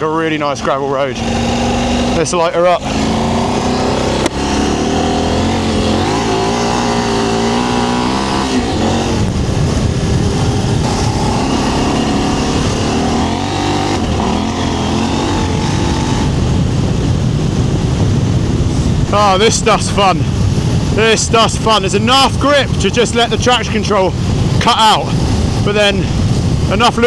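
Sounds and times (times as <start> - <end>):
motorcycle engine accelerating: 0.6 - 27.0.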